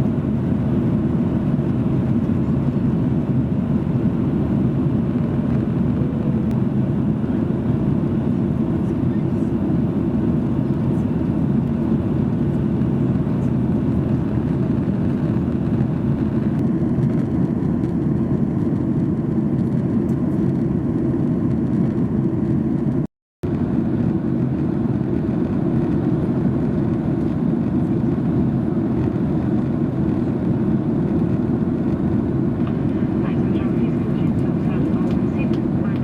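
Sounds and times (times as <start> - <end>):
aircraft engine drone in cabin: 0.0 - 36.0.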